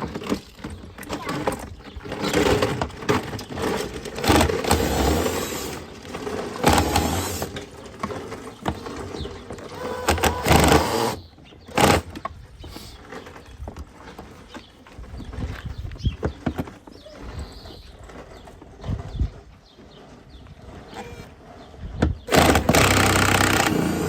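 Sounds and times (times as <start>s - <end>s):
plastic trim scraping and rubbing: 0.0s - 12.2s.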